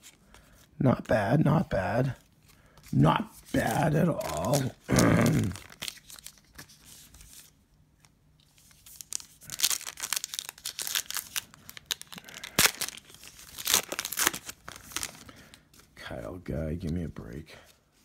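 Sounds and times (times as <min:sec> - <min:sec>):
wrapper crinkling and tearing: 0:02.9 - 0:07.4, 0:08.5 - 0:15.6.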